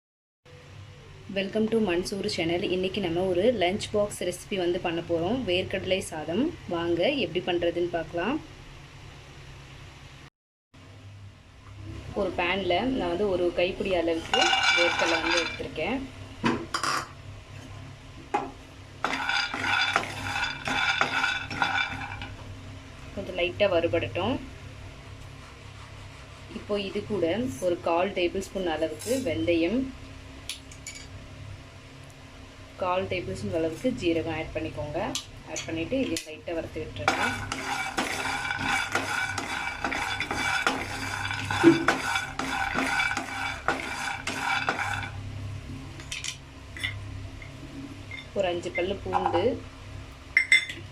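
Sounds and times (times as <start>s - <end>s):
spatula scraping a pan: 14.0s - 15.7s, 19.0s - 22.3s, 37.0s - 45.2s
peanuts rattling in a dry pan: 19.1s - 22.2s.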